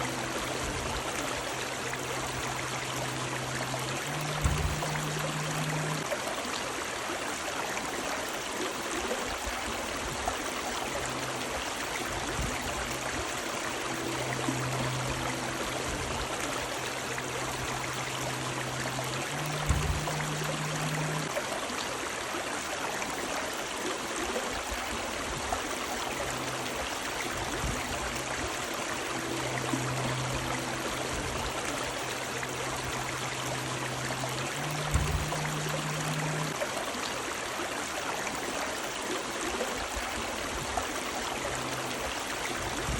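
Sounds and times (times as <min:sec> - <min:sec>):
low hum: 0:00.0 - 0:06.2, 0:10.4 - 0:21.4, 0:25.8 - 0:37.0
river water rushing: 0:00.0 - 0:42.9
soft low thump: 0:04.1 - 0:06.0, 0:19.4 - 0:21.3, 0:34.7 - 0:36.5.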